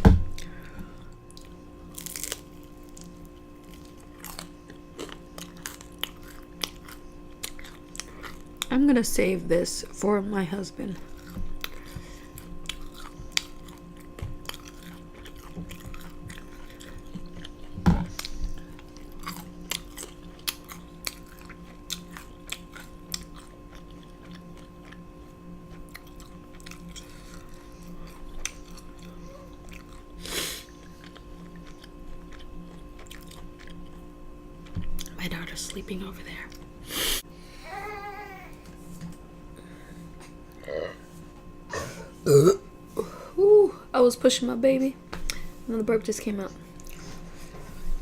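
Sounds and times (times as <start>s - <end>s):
chewing and biting food: 1.1s - 8.7s, 11.0s - 35.2s.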